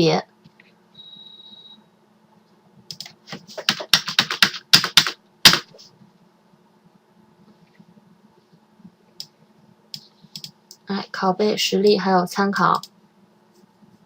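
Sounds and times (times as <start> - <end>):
typing on computer keyboard: 2.9 - 5.7, 10.4 - 10.6.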